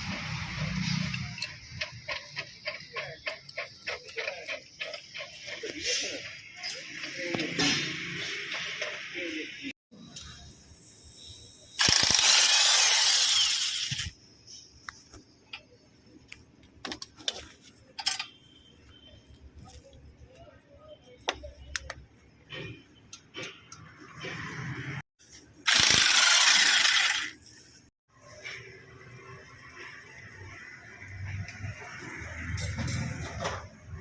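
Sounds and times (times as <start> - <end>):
hand tools ratcheting and knocking: 1.0 - 5.7, 11.8 - 14.1, 25.7 - 27.4.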